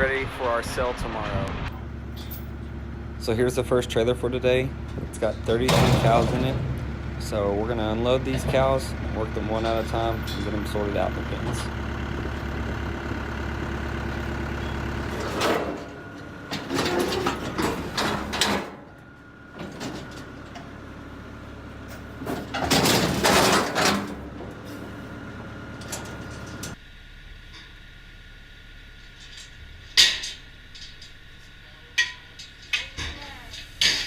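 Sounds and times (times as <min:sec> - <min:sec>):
truck idling: 0:00.0 - 0:34.0
metal gates clattering and banging: 0:02.0 - 0:02.8, 0:04.0 - 0:12.8, 0:13.9 - 0:26.8, 0:29.2 - 0:34.0.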